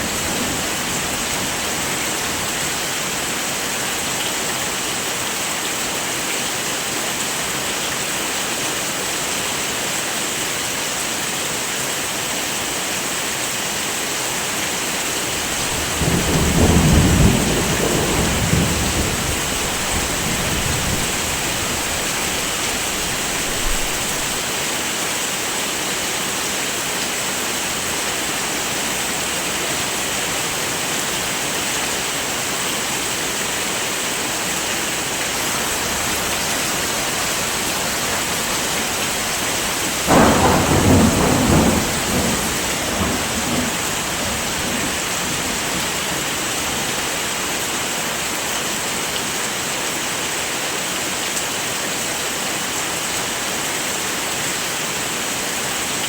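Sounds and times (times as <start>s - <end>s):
heavy rain falling: 0.0s - 56.0s
thunder rumbling: 15.4s - 24.4s, 35.1s - 46.4s.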